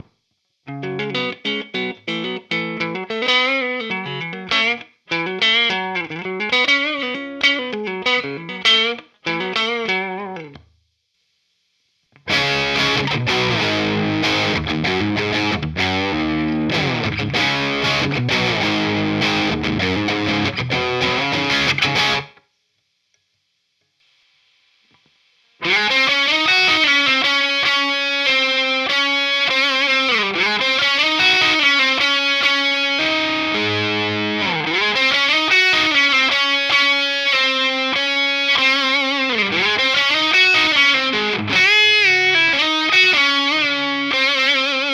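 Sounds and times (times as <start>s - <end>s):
distorted electric guitar riff: 0.0s - 10.7s, 12.2s - 22.4s, 25.6s - 44.9s.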